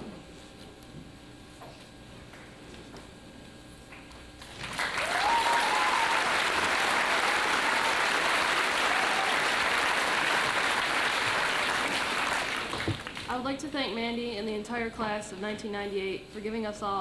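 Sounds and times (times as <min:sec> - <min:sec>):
audience applause: 0:04.5 - 0:13.3
drawn-out whoop: 0:05.0 - 0:08.2.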